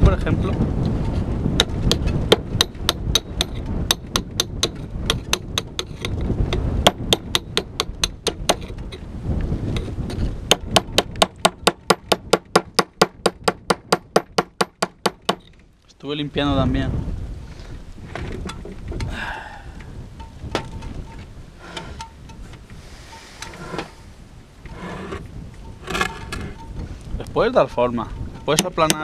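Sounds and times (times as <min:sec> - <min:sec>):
wind rumble on microphone: 0:00.0 - 0:29.0
hand tool tapping rock: 0:01.6 - 0:06.2, 0:28.4 - 0:29.0.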